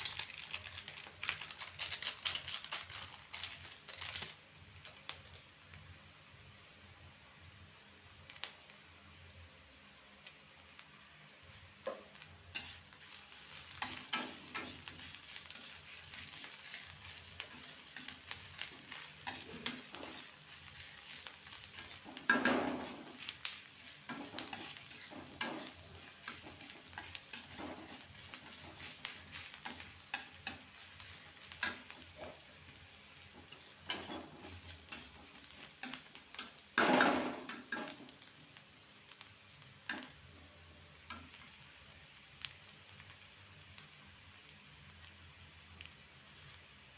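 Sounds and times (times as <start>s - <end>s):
food sizzling in a pan: 0.0s - 46.9s
spatula scraping a pan: 12.5s - 32.4s, 33.3s - 38.0s
spatula clicking on a pan: 21.7s - 30.8s, 31.5s - 31.9s, 39.9s - 40.2s.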